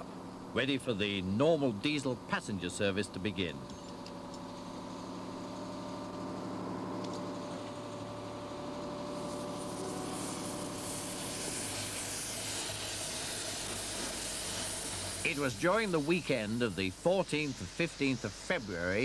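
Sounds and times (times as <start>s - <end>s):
diesel locomotive engine idling: 0.0s - 19.0s
hiss: 9.2s - 19.0s.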